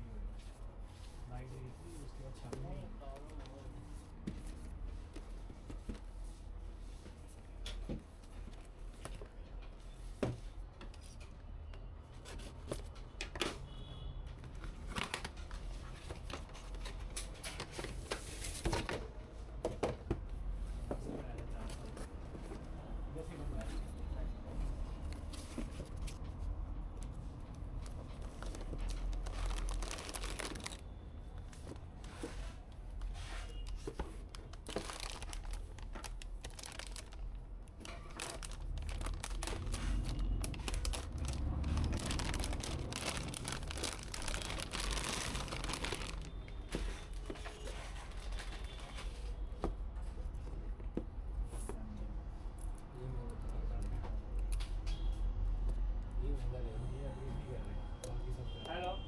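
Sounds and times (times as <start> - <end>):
plastic crinkling and rustling: 14.4 - 19.0, 24.8 - 49.4.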